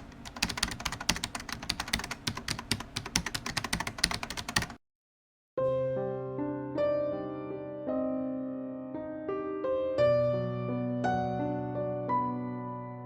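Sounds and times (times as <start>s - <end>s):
keyboard typing clicks: 0.0s - 4.8s
piano music: 5.6s - 13.0s.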